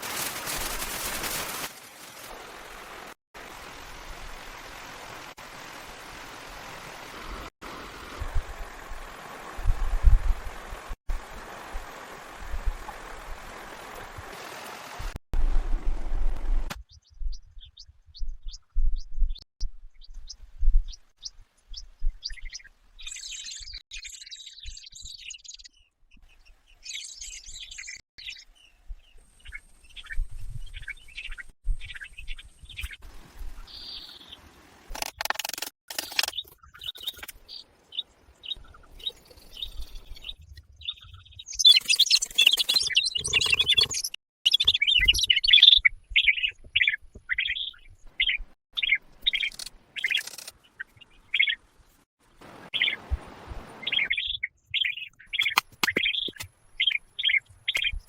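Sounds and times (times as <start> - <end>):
birds chirping: 36.0 - 51.6, 52.7 - 58.0.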